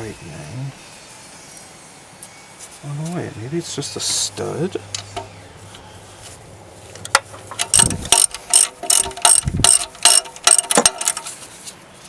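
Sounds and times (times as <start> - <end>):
socket wrench ratchet clicking: 7.1 - 11.3.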